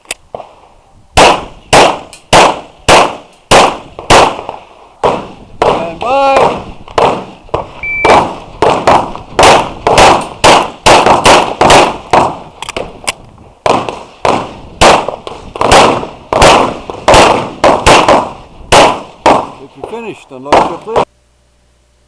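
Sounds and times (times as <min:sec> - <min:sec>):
rapid pistol shots: 0:01.2 - 0:13.0, 0:13.6 - 0:21.1
shot timer beep: 0:07.8 - 0:08.1.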